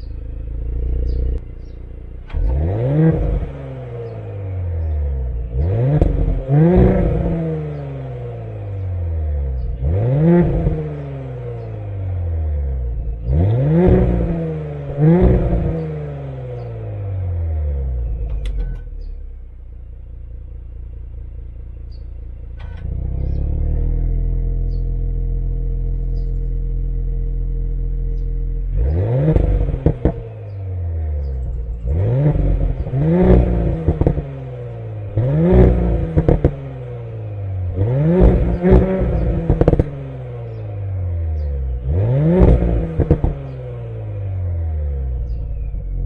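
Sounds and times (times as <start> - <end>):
car engine revving: 0.0 - 46.0
exhaust pops: 2.1 - 3.7, 5.6 - 7.8, 13.6 - 15.9, 28.1 - 30.3, 31.2 - 36.8, 37.7 - 40.6, 41.4 - 43.8.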